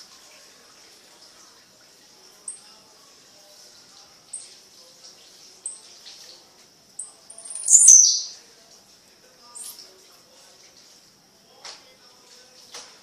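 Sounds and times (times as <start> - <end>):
bird chirping high: 7.0 - 8.4.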